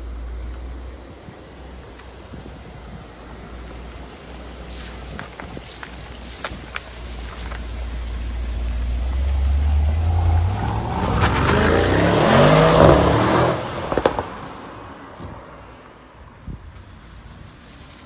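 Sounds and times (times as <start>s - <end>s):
car engine revving: 7.0s - 15.1s.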